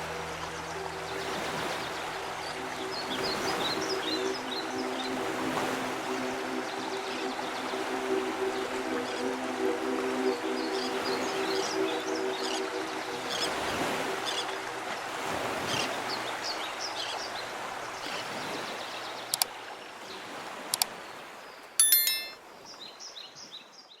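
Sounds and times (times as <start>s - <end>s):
bright metallic ring: 21.8s - 22.4s.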